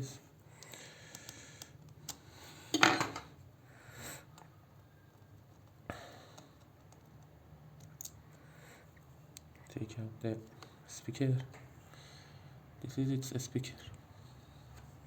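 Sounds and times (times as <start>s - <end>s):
small clicks and scrapes on plastic: 4.3s - 8.4s.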